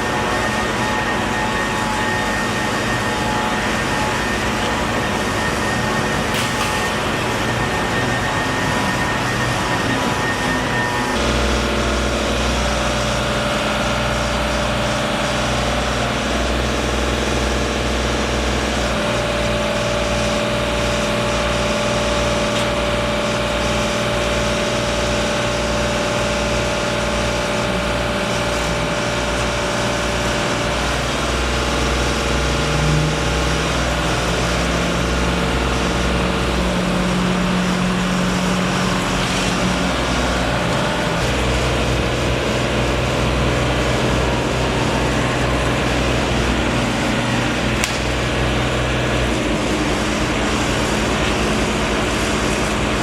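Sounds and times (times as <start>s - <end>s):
heavy engines throbbing: 0.0s - 53.0s.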